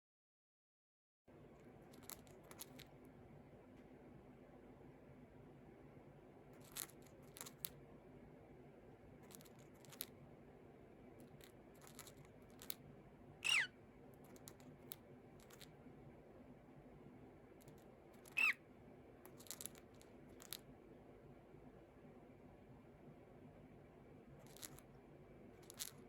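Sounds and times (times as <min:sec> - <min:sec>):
bird chirp: 0:13.4 - 0:13.8, 0:18.2 - 0:18.6.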